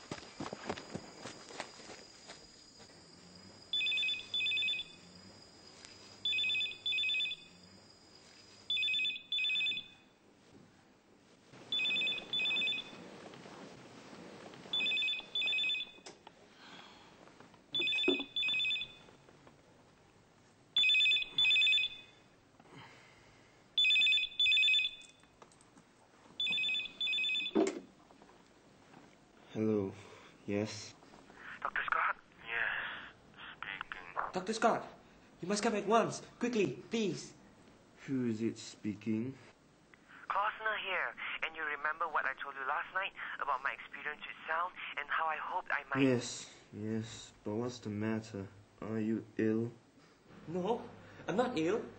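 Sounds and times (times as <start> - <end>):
telephone double ring: 17.8 - 19.0, 23.8 - 25.1, 26.4 - 27.9.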